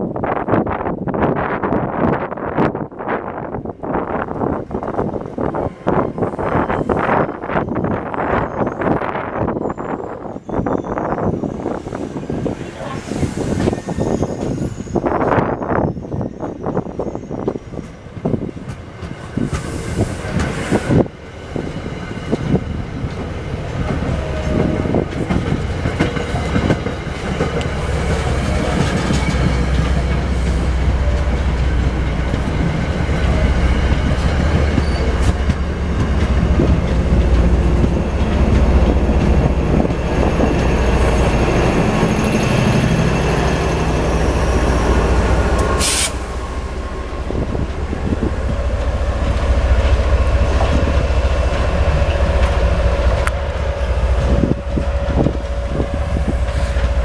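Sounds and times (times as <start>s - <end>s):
train passing rumble: 0.0s - 57.0s
wind buffeting microphone: 0.0s - 57.0s.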